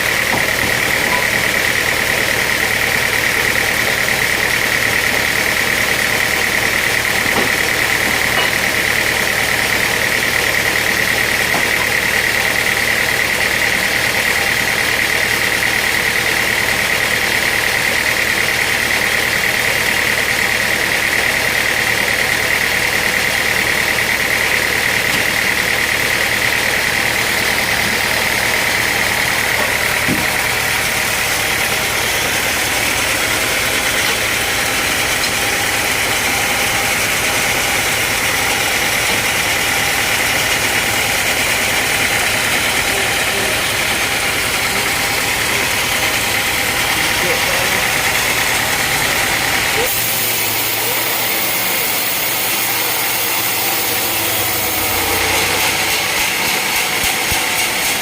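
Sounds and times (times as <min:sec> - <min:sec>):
sawmill machinery running: 0:00.0 - 0:58.0.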